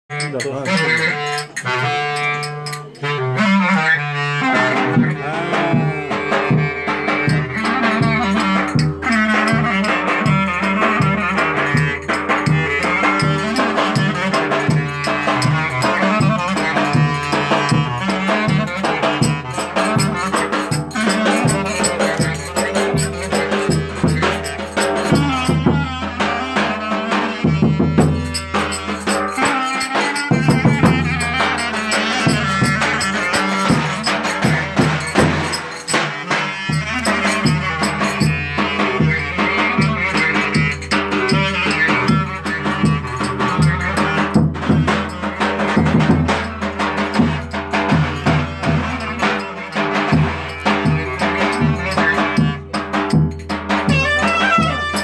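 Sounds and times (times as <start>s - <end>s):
drum beat: 0.1s - 55.0s
folk dance melody instruments: 0.1s - 55.0s
rattle-like percussion: 0.1s - 55.0s.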